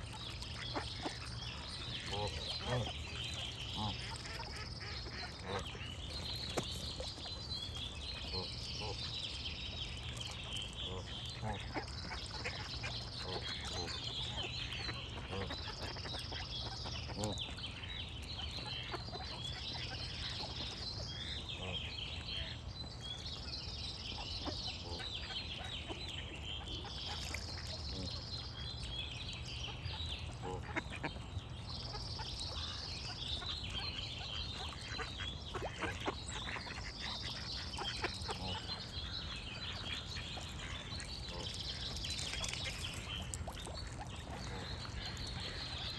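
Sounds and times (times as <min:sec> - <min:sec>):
small birds chirping: 0:00.0 - 0:45.9
ducks quacking: 0:00.4 - 0:06.0, 0:10.9 - 0:17.6, 0:29.7 - 0:31.2, 0:31.8 - 0:45.9.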